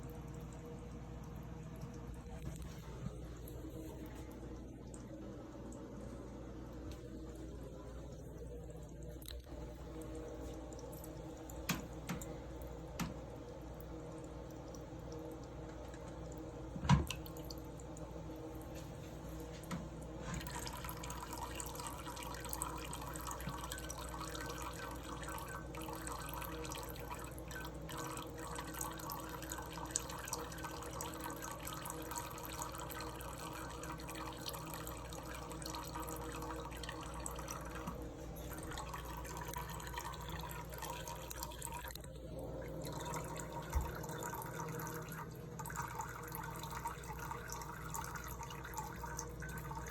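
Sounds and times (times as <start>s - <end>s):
tap water splashing into sink: 9.2s - 18.0s, 18.6s - 42.1s, 42.8s - 49.9s.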